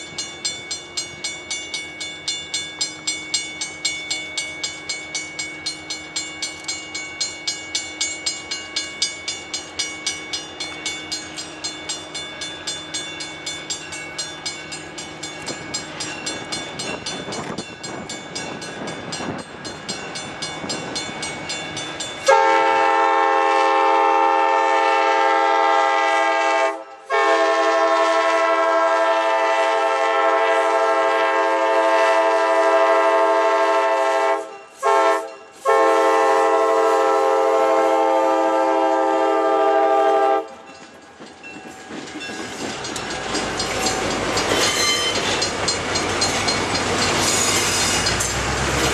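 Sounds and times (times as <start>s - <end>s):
train wheels clicking over rail joints: 0.0s - 23.8s, 39.8s - 48.9s
locomotive air horn blasts: 22.3s - 40.6s.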